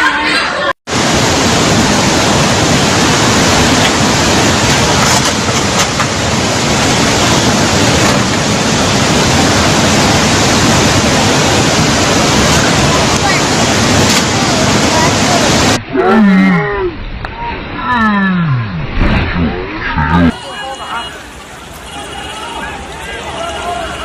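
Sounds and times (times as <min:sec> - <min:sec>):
floodwater rushing: 0:00.9 - 0:24.0.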